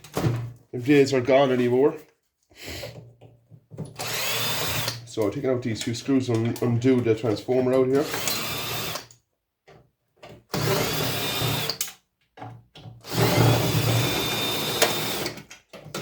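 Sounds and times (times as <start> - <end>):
power drill whining: 4.0 - 5.0, 8.0 - 9.2, 10.5 - 11.9, 13.0 - 16.0.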